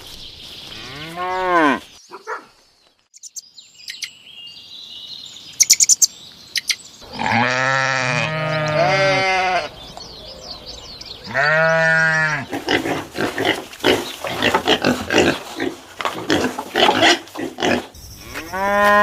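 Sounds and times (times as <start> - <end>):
high bird chirps: 1.9 - 7.1, 8.3 - 12.9
sheep or goat bleating: 7.1 - 9.8, 11.3 - 12.6.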